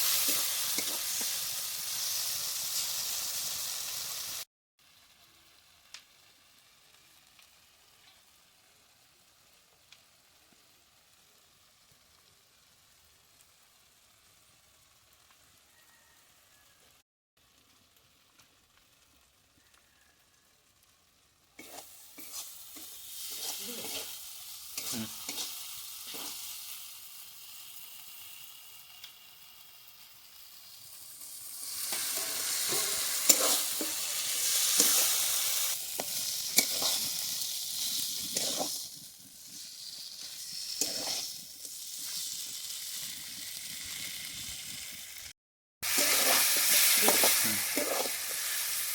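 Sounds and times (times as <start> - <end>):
food sizzling in a pan: 0.0 - 48.9
utensil scraping a pan: 21.6 - 24.2, 31.8 - 42.3, 45.8 - 48.6.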